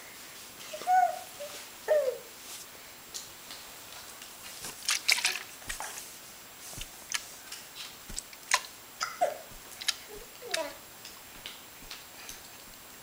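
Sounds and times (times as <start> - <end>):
baby hiccupping: 9.0 - 10.8.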